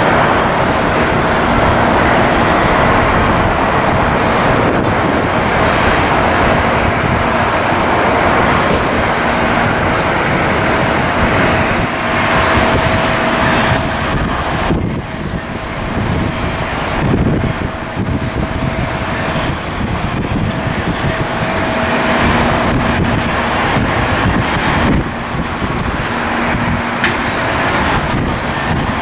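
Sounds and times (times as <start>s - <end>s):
jet engines running: 0.0s - 29.0s.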